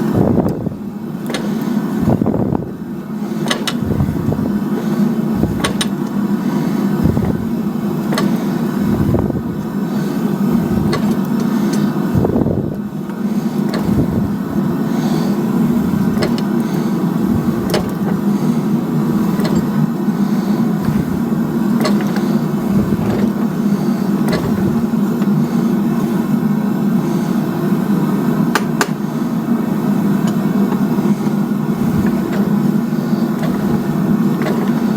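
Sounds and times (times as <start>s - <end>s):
steady mechanical drone: 0.0s - 34.9s
metallic clicks and knocks: 3.4s - 3.8s, 5.6s - 6.2s.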